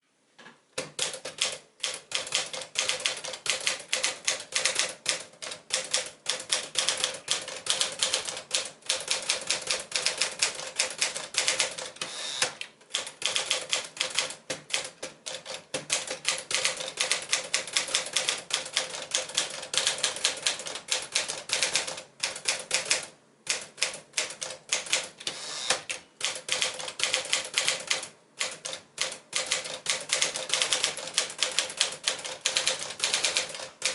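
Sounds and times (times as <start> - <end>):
typewriter key strikes: 29.0 - 33.9.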